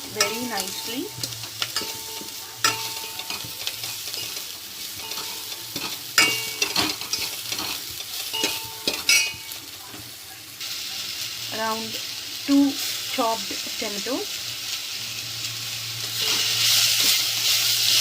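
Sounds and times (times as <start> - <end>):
garlic and onion sizzling in oil: 0.0 - 18.0
utensil scraping a pan: 16.0 - 18.0.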